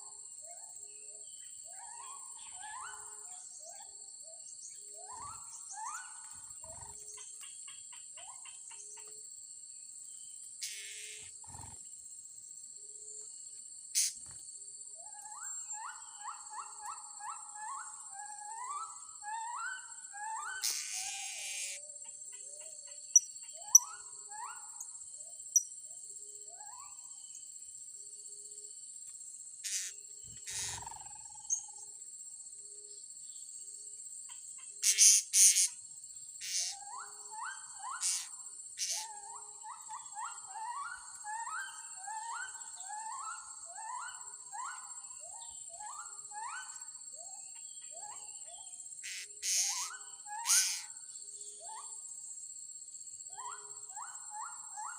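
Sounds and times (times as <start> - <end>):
insects droning: 0.0 - 54.9
shrill bird calls: 1.4 - 7.3, 10.6 - 11.3, 15.2 - 24.7, 29.6 - 31.8, 34.6 - 35.8, 36.4 - 51.0
birds chirping: 49.1 - 50.8.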